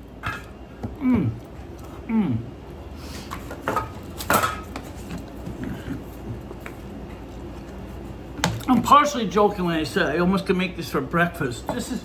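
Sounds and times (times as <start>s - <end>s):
metal kitchenware clinking: 3.7s - 4.8s.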